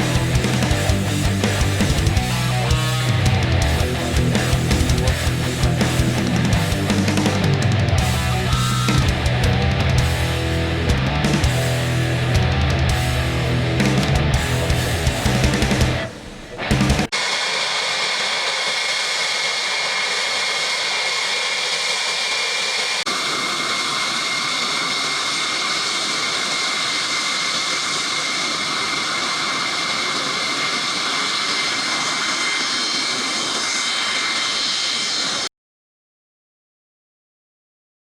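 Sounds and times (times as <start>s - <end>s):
high engine whine: 0.0s - 35.5s
jet engines running: 0.0s - 35.5s.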